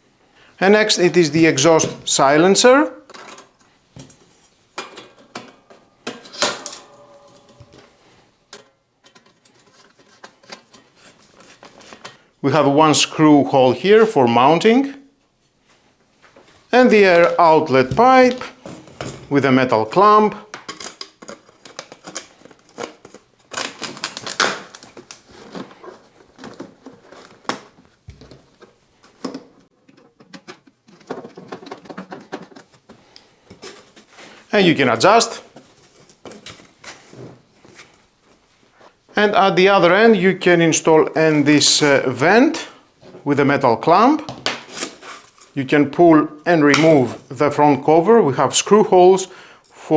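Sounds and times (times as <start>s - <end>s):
hands handling metal pipe and clamp: 3.1s - 12.2s
metal knocking and clinking: 4.8s - 9.3s
metallic ringing: 5.1s - 8.7s.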